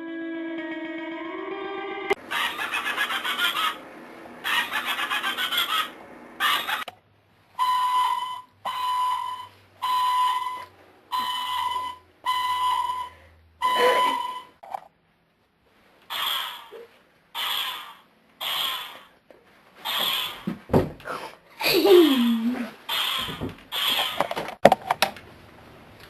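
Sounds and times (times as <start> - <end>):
toy wand pulsing rattle effect: 2.3 - 3.8, 4.4 - 6.9
toy wand whistle-like tone: 7.6 - 14.5.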